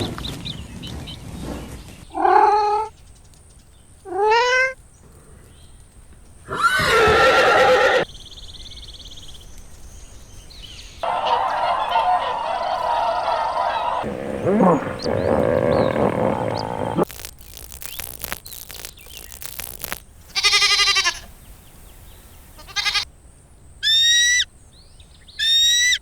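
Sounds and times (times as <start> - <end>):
farm animal calls: 2.0 - 2.9, 6.4 - 8.1, 11.0 - 23.0.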